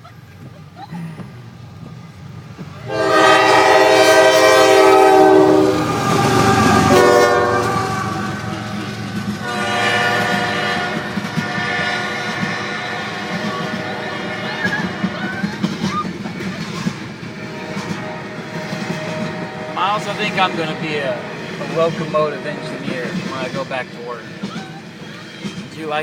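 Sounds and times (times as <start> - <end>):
passing train rumble: 0.0 - 26.0
locomotive air horn blasts: 2.9 - 15.4, 17.4 - 22.9.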